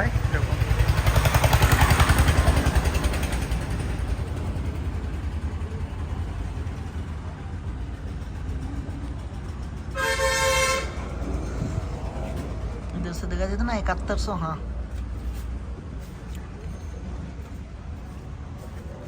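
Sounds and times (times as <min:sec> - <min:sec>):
vehicle engine rumbling past: 0:00.0 - 0:19.0
vehicle horn: 0:09.9 - 0:11.1.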